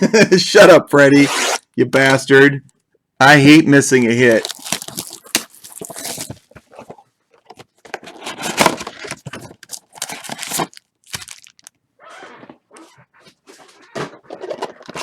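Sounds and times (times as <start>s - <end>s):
trading cards and wrappers rustling: 4.2s - 11.8s.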